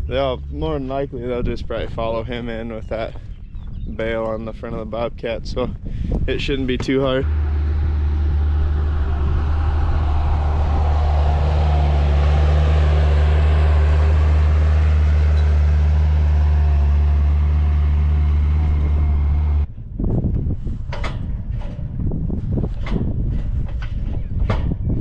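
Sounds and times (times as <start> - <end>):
vehicle engine droning: 0.0 - 4.8, 6.8 - 19.7.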